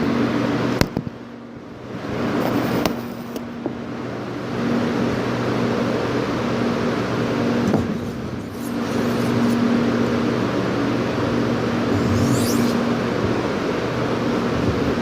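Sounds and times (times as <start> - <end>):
steady low hum: 0.0 - 15.0
knife scraping on sharpening stone: 11.9 - 12.9.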